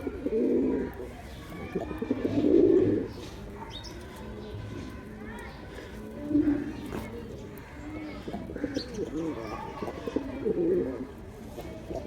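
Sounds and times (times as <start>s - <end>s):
pigeon cooing: 8.1s - 12.0s.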